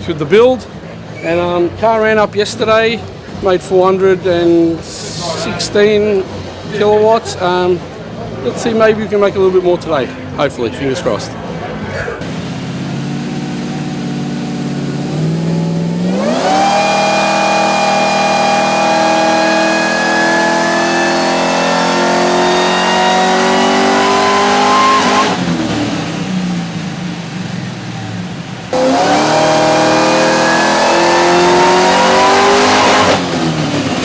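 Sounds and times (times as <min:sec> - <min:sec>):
supercharged engine revving on dyno: 0:12.2 - 0:34.0.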